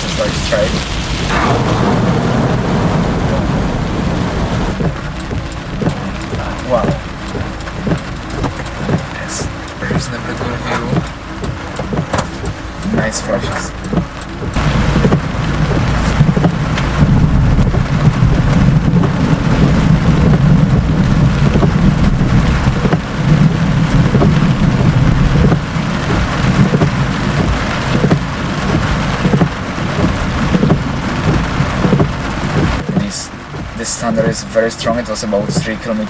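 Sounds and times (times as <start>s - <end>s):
rolling thunder: 0.0s - 8.2s, 14.4s - 32.8s
heavy rain pouring: 0.0s - 36.0s.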